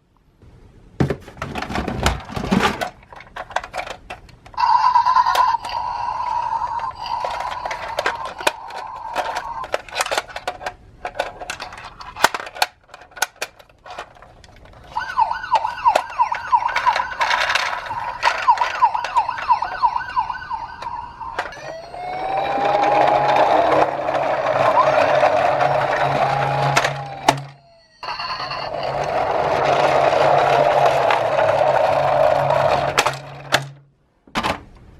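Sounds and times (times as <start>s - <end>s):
toy electronic siren: 4.6s - 9.8s, 14.9s - 33.0s.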